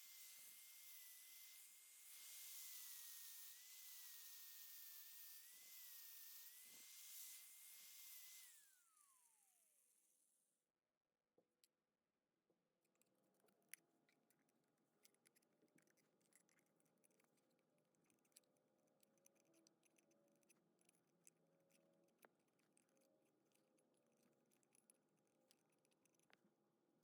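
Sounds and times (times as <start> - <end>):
faint clicks and ticks: 12.8 - 27.0.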